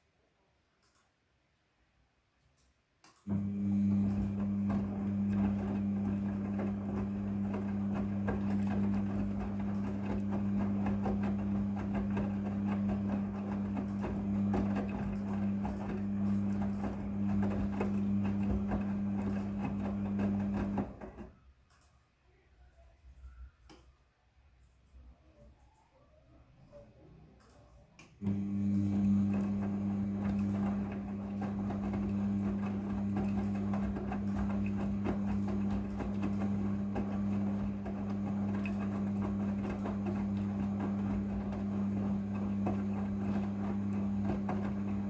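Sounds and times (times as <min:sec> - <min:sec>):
tumbling wet laundry: 0:03.3 - 0:21.4, 0:28.2 - 0:45.0
washing machine motor hum: 0:03.3 - 0:21.4, 0:26.6 - 0:45.0.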